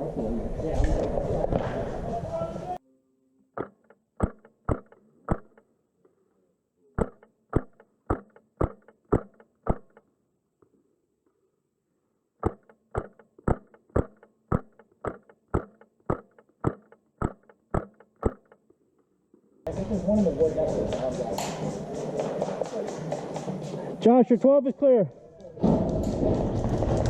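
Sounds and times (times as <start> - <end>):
airsoft rifle shots: 3.6 - 5.6, 7.0 - 10.0.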